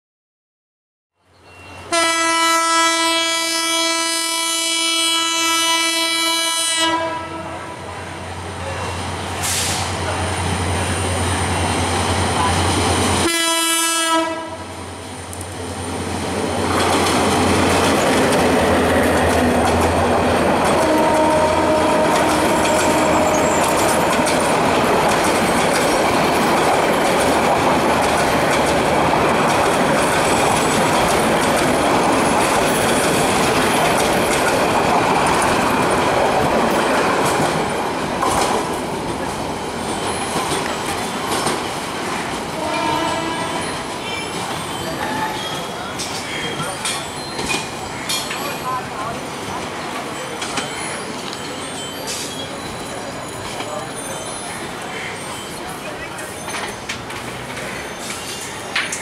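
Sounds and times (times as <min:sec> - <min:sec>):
locomotive horn blasts: 0:01.8 - 0:07.8, 0:13.2 - 0:14.7, 0:20.8 - 0:23.7, 0:42.6 - 0:43.8
train wheels rumbling on track: 0:02.9 - 0:59.0
clickety-clack of wheels: 0:16.5 - 0:42.6, 0:44.3 - 0:48.6, 0:56.0 - 0:59.0.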